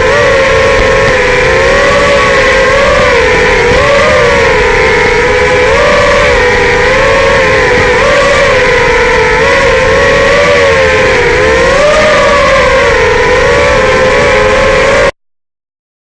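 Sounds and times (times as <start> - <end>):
drone motors whining: 0.0 - 15.1.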